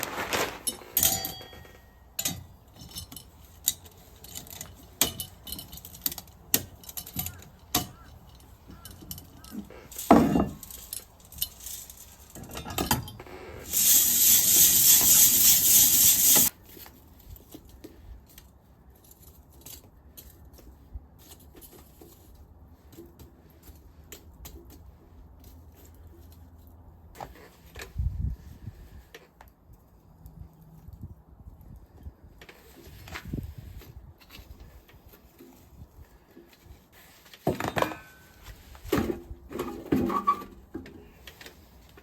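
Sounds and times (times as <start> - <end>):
loud hissing rush: 13.6 - 16.5.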